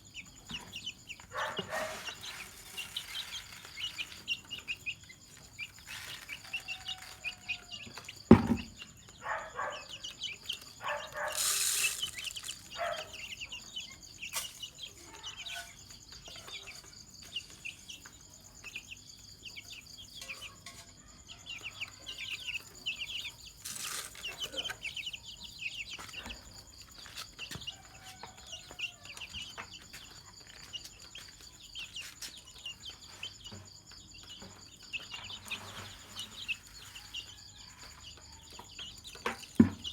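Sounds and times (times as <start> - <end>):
chicks peeping: 0.0 - 39.9
rustling: 1.4 - 7.8, 10.7 - 13.2, 23.5 - 24.8
sharp knock: 8.3 - 8.8.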